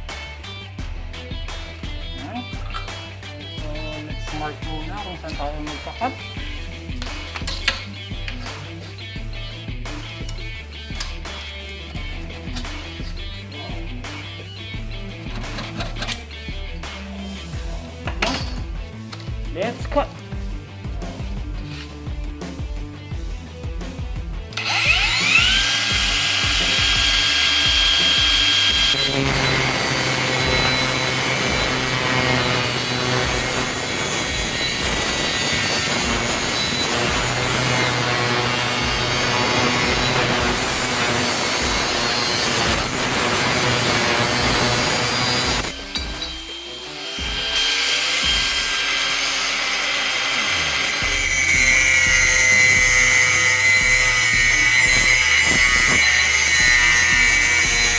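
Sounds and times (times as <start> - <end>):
grinder cutting steel: 2.5 - 20.4, 24.5 - 57.9
angle grinder whine: 24.5 - 57.9.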